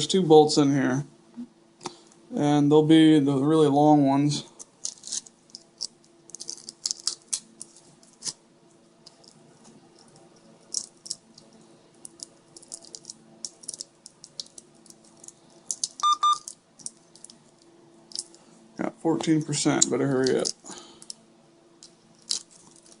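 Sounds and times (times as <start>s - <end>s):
screws and plastic parts rattling: 4.8s - 8.3s, 10.0s - 17.4s
short electronic beeps: 16.0s - 16.5s.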